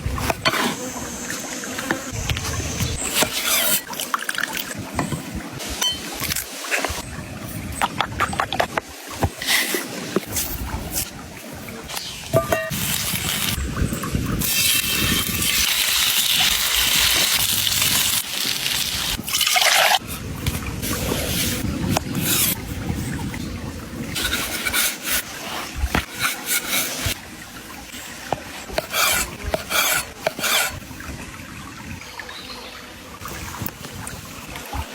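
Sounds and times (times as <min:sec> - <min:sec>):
rubbing and scraping strokes: 0:00.1 - 0:04.0, 0:19.9 - 0:23.2, 0:24.0 - 0:30.9.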